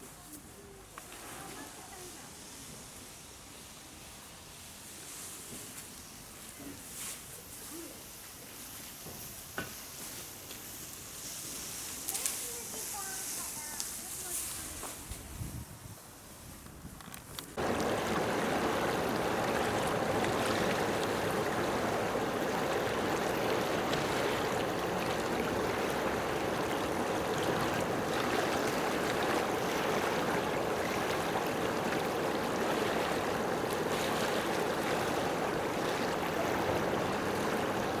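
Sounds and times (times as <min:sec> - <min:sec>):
running water rushing: 0:17.6 - 0:38.0.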